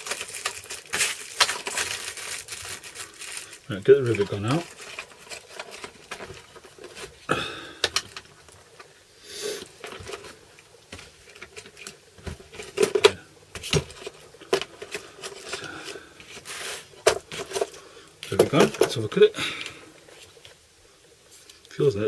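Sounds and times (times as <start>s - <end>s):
rustles and scrapes: 0.0s - 7.3s, 9.5s - 19.2s, 21.2s - 21.8s
hard objects clicking and knocking: 4.2s - 8.9s.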